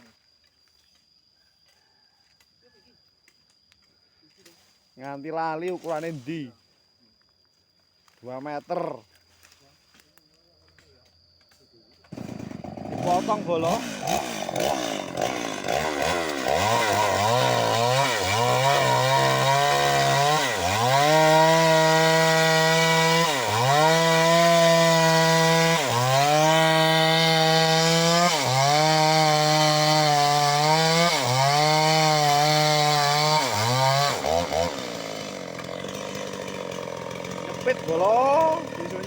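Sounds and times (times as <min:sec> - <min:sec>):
chainsaw sawing through log: 0:12.0 - 0:39.0.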